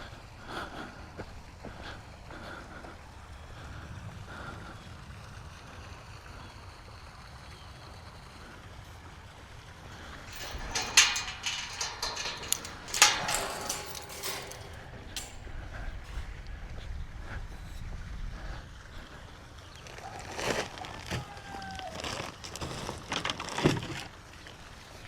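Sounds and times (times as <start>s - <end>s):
objects knocking and clattering: 10.3s - 15.6s
short metallic ring: 10.3s - 16.0s.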